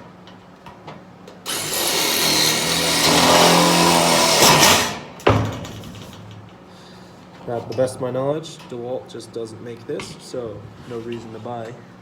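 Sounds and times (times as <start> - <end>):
rivet tool motor running: 1.5 - 5.1.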